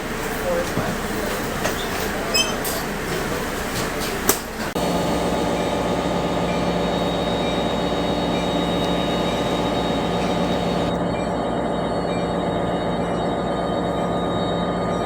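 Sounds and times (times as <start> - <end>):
train car rattling rumble: 0.0 - 11.0
steady low hum: 4.7 - 15.0.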